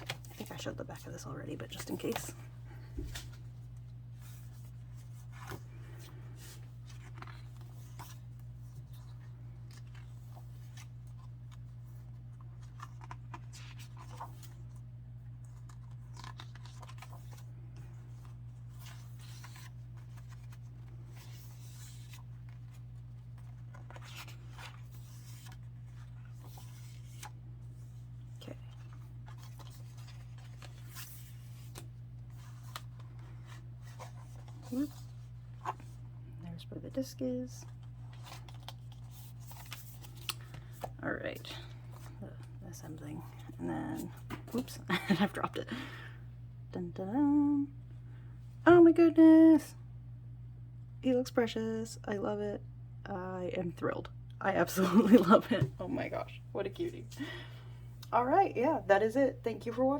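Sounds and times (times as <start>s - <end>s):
paper and card rustling: 0.0s - 36.0s, 36.9s - 42.5s, 43.1s - 45.5s
steady low hum: 0.0s - 59.9s.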